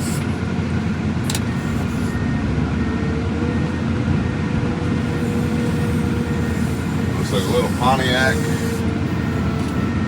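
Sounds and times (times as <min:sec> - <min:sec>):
vehicle engine and road rumble: 0:00.0 - 0:10.0
faint steady whine: 0:03.6 - 0:10.0.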